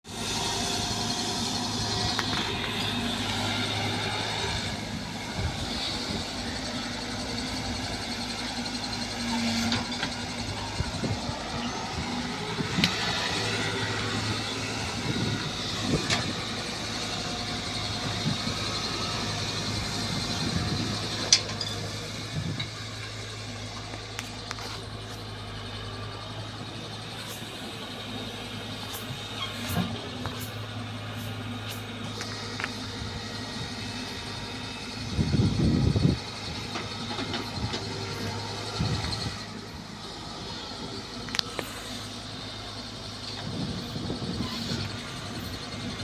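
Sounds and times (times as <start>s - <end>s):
excavator diesel engine: 0.0s - 46.0s.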